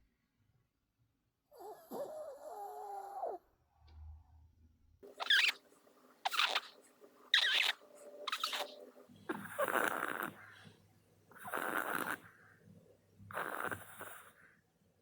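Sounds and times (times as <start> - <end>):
dog snoring: 1.5 - 3.4, 7.6 - 10.6, 11.3 - 12.4, 13.2 - 14.6.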